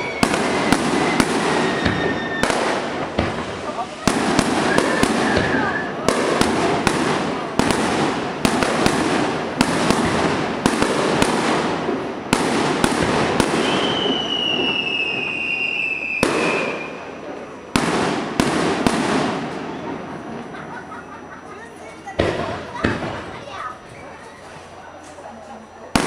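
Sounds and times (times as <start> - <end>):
long high whistle: 0.0 - 2.7, 13.6 - 17.1
firework crackling: 0.0 - 26.0.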